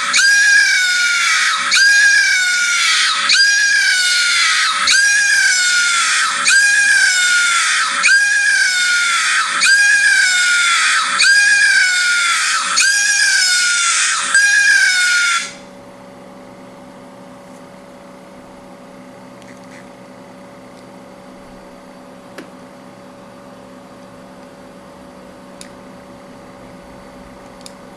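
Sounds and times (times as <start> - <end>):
phone alarm siren wail: 0.0 - 15.7.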